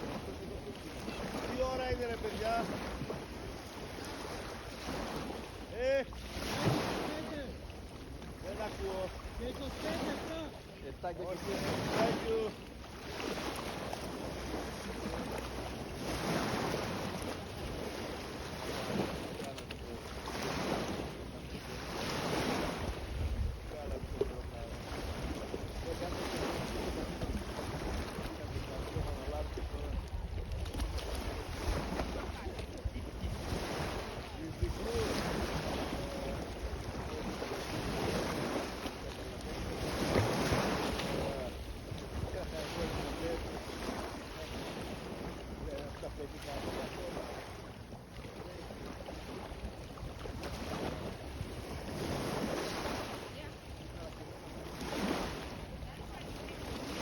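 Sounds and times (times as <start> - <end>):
sea waves washing in: 0.0 - 57.0
wind buffeting microphone: 22.4 - 38.7.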